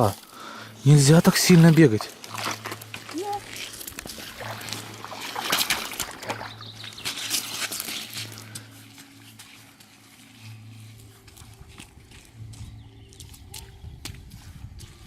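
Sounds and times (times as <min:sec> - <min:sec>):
splashing in a shallow stream: 0:00.9 - 0:08.6.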